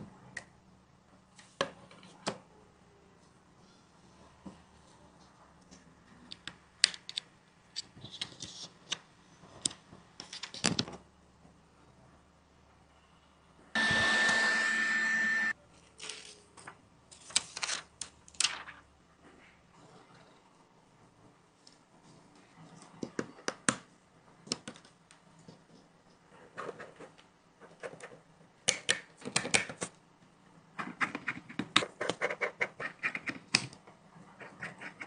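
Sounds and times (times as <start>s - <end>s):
small electric blower whining: 13.8s - 15.5s.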